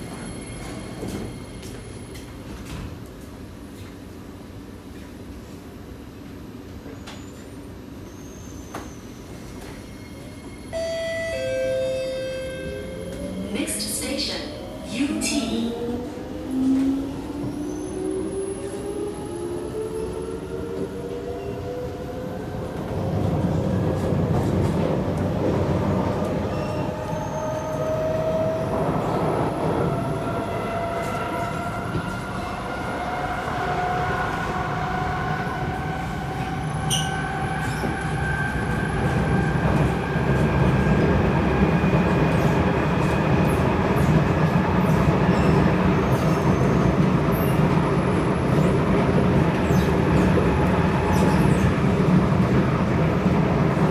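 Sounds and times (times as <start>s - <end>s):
wheels rumbling on rail: 12.6s - 53.9s.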